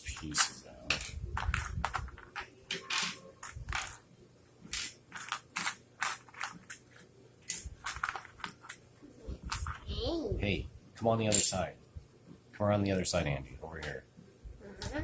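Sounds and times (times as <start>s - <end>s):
plastic bricks clicking and clattering: 4.7s - 6.8s.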